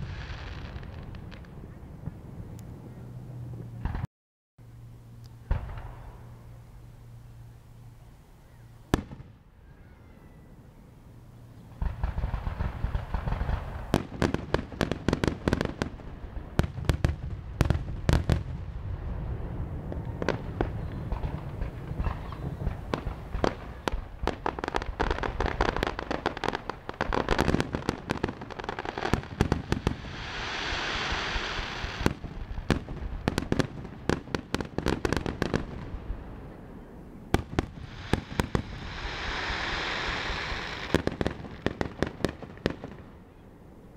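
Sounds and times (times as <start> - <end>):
fireworks bangs and crackles: 0.0 - 2.5, 3.5 - 4.1, 8.9 - 9.4, 11.8 - 43.4
hissing crackle: 24.6 - 32.9, 37.4 - 42.6.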